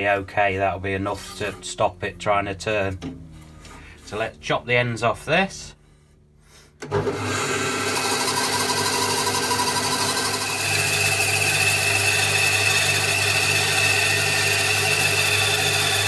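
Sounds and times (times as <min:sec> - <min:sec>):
bandsaw cutting log: 0:06.8 - 0:16.0.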